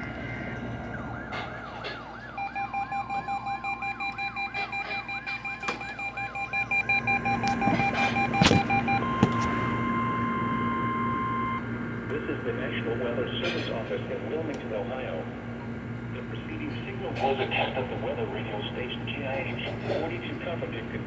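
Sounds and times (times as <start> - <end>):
siren-like warble: 0.0 - 11.7
steady warning alarm tone: 0.4 - 11.7
fast beeping: 2.4 - 11.6.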